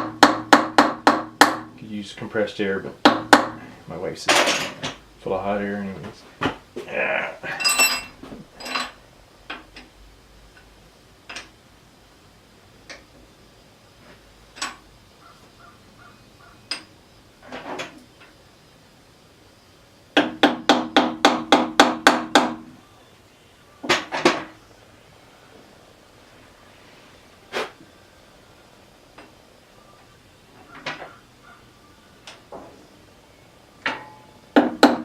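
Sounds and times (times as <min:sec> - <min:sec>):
metal clinks and knocks: 0:07.5 - 0:09.9.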